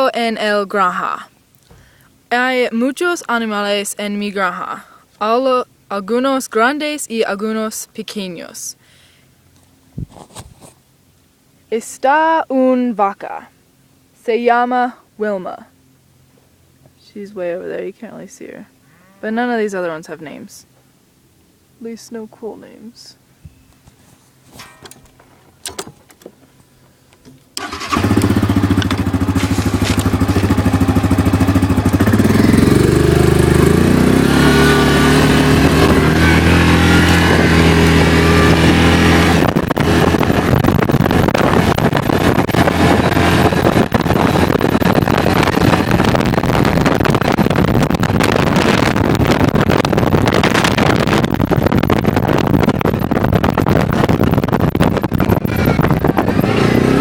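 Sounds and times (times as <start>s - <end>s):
vehicle engine running: 24.4s - 57.0s
loud steady rushing noise: 29.2s - 57.0s.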